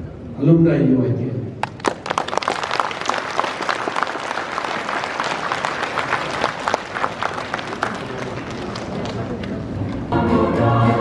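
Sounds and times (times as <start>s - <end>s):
audience applauding: 1.6s - 10.1s.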